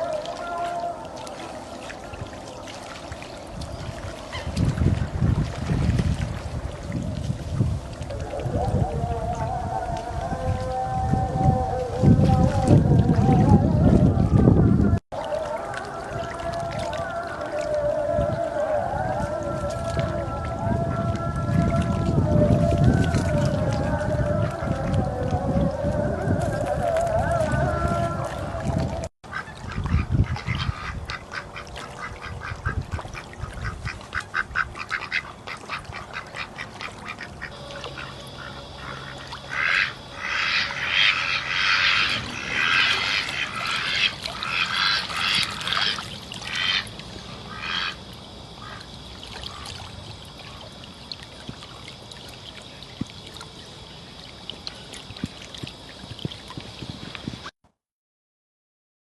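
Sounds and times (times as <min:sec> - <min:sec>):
chorus of rapid animal calls: 0:37.5 - 0:46.9, 0:47.5 - 0:48.0.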